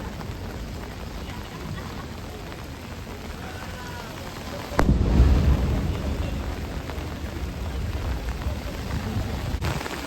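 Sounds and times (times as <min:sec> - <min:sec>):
steady rain hiss: 0:00.0 - 0:10.0
firework shell booming: 0:04.8 - 0:08.7.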